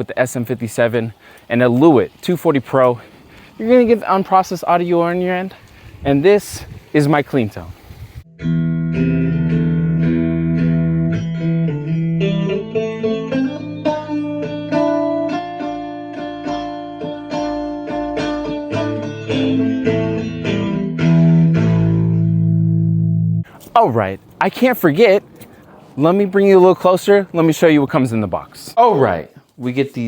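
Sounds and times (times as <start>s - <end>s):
clean electric guitar playing: 8.3s - 23.4s.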